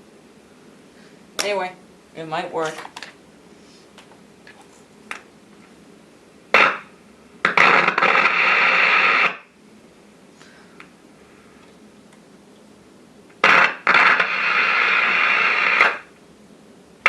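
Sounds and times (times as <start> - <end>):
radio static bursts: 6.5 - 9.5, 13.4 - 16.1.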